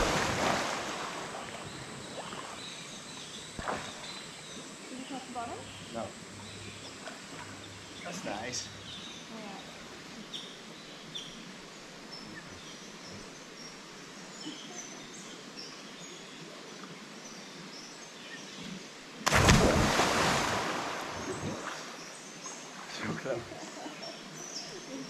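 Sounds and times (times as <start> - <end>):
loud splash into water: 0.0 - 1.4, 19.2 - 21.4
creek hiss: 0.0 - 25.0.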